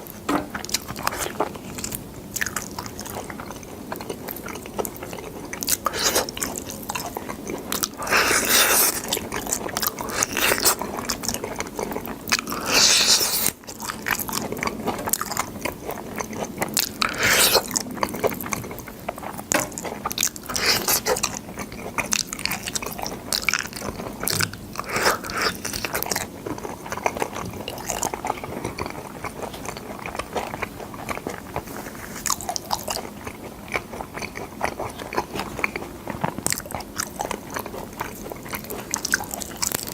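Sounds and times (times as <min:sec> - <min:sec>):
wet chewing: 0:00.0 - 0:39.9
crisp crunches of biting: 0:19.3 - 0:39.9.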